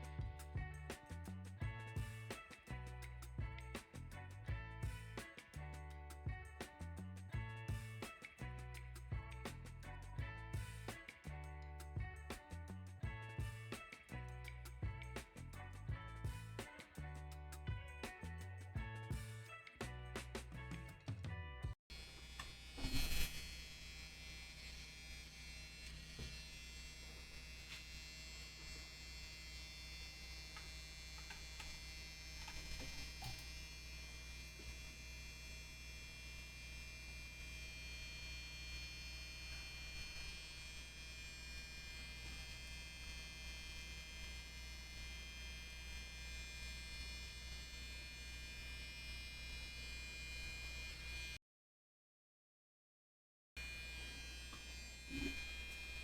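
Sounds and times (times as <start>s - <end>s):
small electric motor humming: 21.9s - 51.4s, 53.6s - 56.0s.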